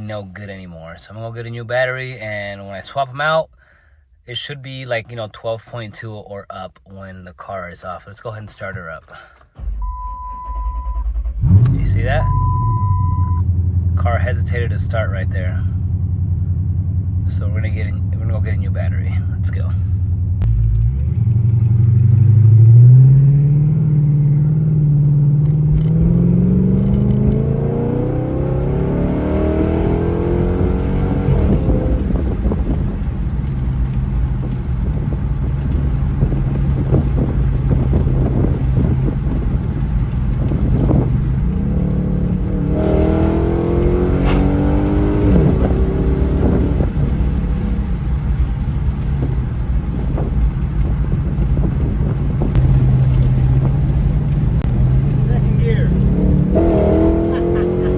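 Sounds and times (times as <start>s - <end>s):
car engine accelerating: 9.6s - 57.9s.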